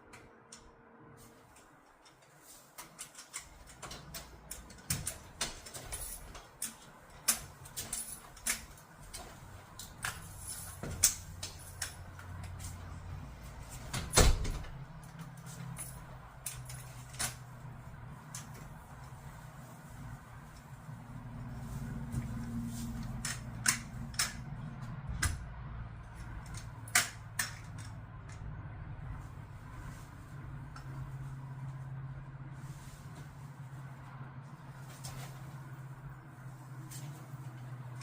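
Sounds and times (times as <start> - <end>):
knocks and clatters of handling: 1.5 - 20.8.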